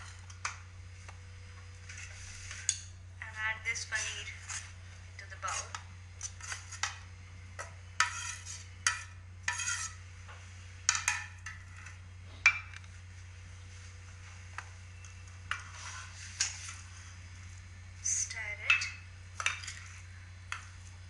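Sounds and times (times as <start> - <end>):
low steady hum: 0.0 - 21.0
spoon scraping and clinking bowl: 8.0 - 10.0.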